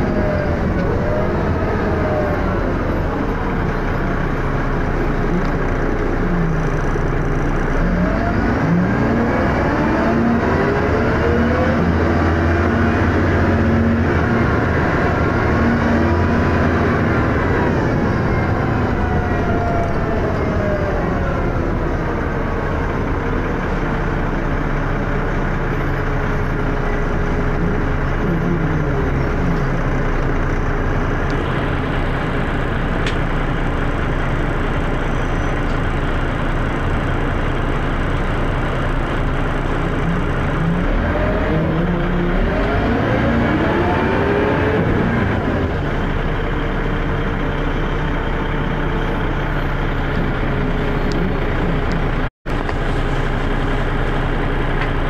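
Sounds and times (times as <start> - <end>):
bus diesel engine running: 0.0 - 55.0.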